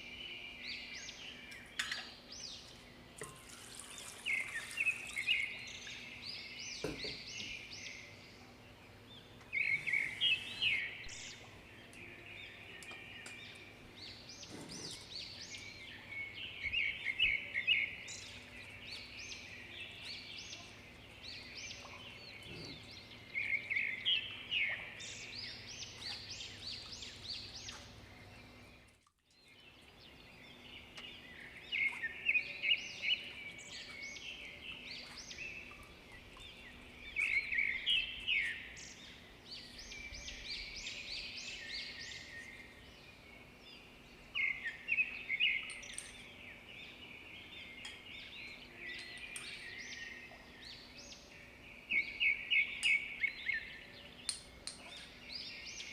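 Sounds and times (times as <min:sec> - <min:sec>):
birds chirping: 0:00.0 - 0:55.9.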